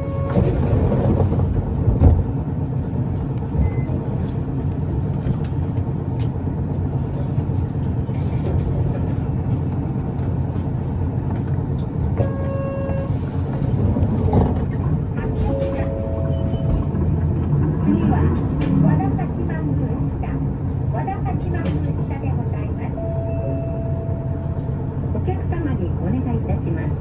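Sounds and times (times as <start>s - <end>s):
bus engine and road rumble: 0.0s - 27.0s.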